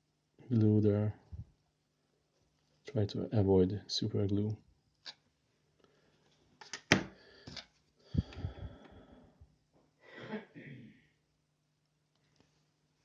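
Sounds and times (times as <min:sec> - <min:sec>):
breathy noises: 0:07.1 - 0:10.4.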